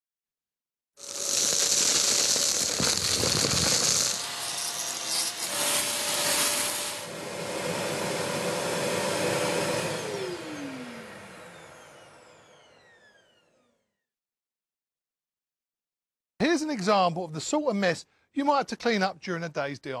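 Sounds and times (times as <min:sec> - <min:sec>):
power tool working wood: 0:01.0 - 0:13.7
motor winding down: 0:01.0 - 0:13.8.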